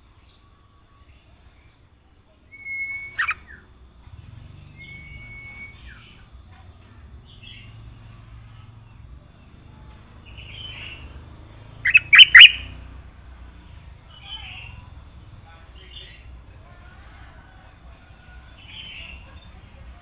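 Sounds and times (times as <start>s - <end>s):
sharp bird notes: 11.8s - 12.8s
bulbul chirping: 11.8s - 12.9s.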